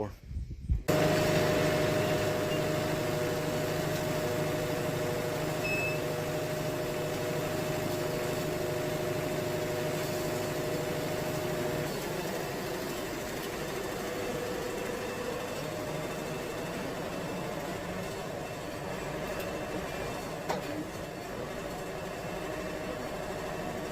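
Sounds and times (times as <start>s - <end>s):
band sawmill running: 0.9s - 23.9s.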